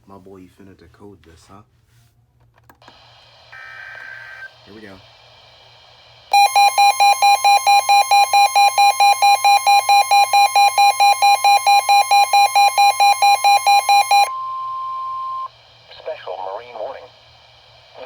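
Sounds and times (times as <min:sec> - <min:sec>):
rapid pulsing beeps: 0:06.3 - 0:15.5
steady alert tone: 0:06.4 - 0:14.3.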